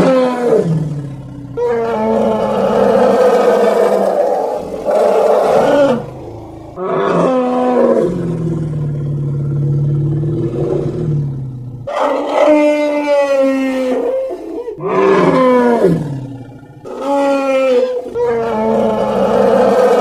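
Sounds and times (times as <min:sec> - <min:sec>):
elephant calls: 0:01.6 - 0:08.0, 0:16.8 - 0:20.0.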